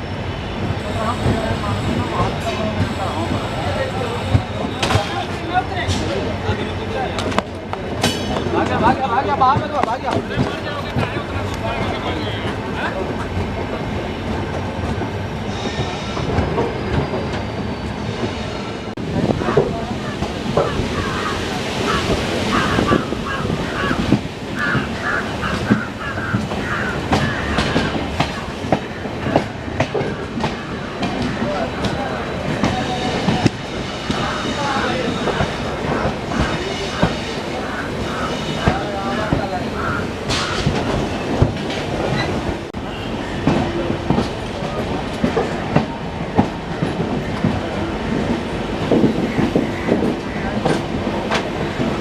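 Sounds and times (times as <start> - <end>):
train wheels rumbling: 0.0 - 52.0
wheels clacking over rail joints: 19.4 - 52.0.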